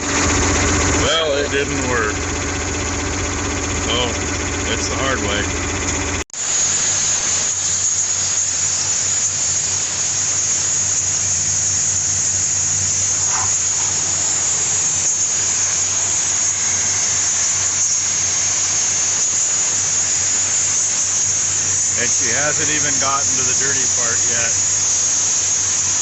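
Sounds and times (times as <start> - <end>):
steady low hum: 0.0 - 26.0
compressed air hissing from hose: 6.4 - 26.0.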